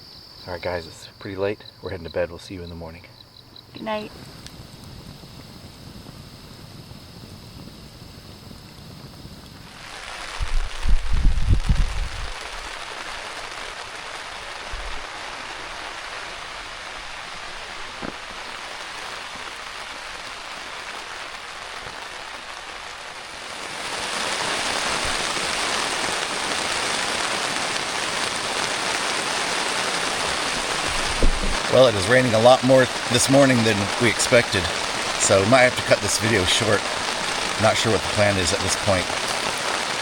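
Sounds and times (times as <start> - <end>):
steady rain falling: 0.0 - 40.0.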